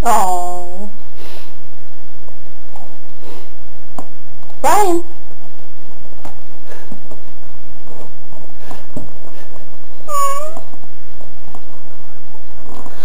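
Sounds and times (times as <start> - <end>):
cat meowing: 10.1 - 10.7.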